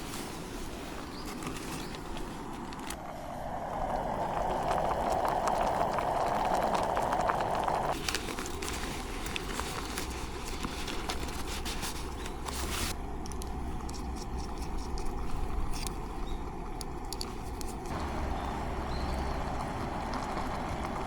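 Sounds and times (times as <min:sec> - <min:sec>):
wood fire crackling: 0:00.0 - 0:13.9, 0:16.6 - 0:21.0.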